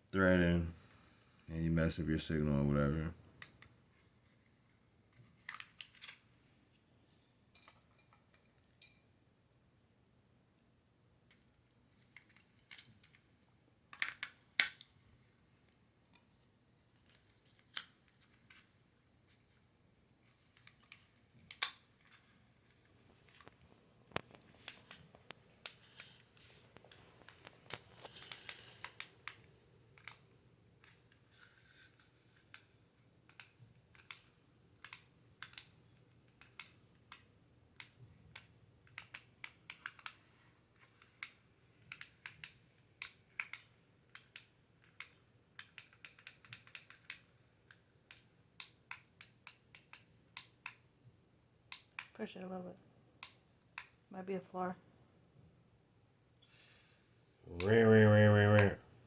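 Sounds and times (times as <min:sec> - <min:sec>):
small plastic parts clicking: 0:05.1 - 0:06.3, 0:11.3 - 0:13.3, 0:13.9 - 0:15.0, 0:15.7 - 0:18.8, 0:20.4 - 0:50.9, 0:51.7 - 0:52.2, 0:53.2 - 0:54.0.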